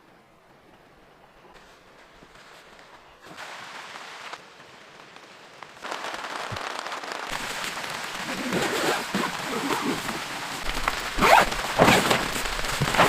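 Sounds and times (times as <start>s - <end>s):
heavy rain patter: 1.5s - 13.0s.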